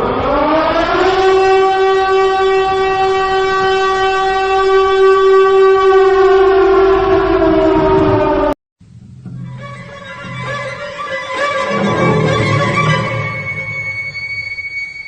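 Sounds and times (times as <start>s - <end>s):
siren wailing: 0.0s - 8.6s, 9.4s - 15.0s.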